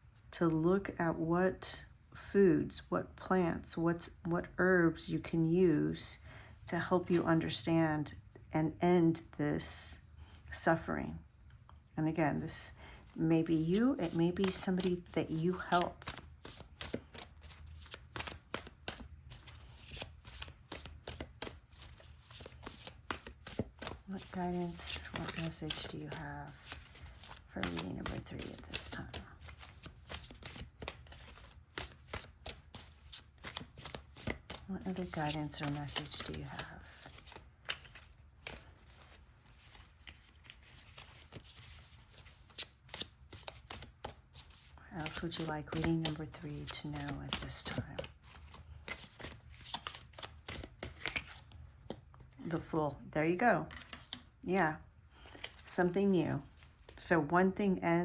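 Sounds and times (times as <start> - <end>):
cards being shuffled: 13.0 - 52.0, 53.7 - 54.3, 55.2 - 57.0.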